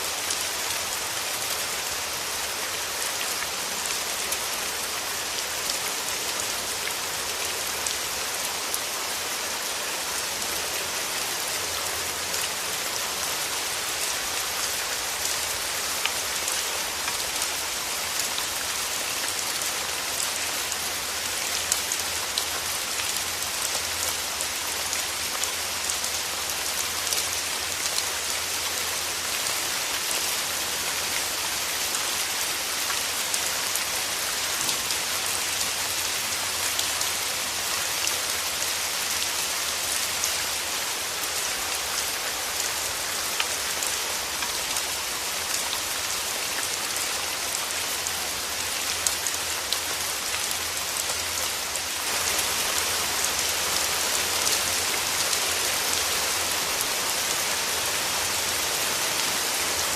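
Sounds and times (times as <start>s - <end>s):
steady rain falling: 0.0s - 59.9s
raindrops pattering on surfaces: 10.0s - 40.5s.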